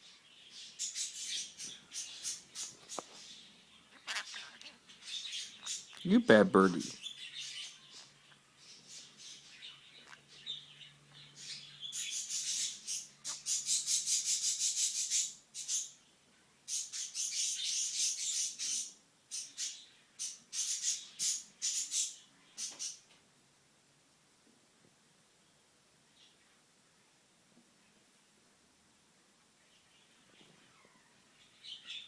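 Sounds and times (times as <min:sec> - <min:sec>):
faint bird chirps: 0:00.0 - 0:23.1, 0:29.5 - 0:32.0.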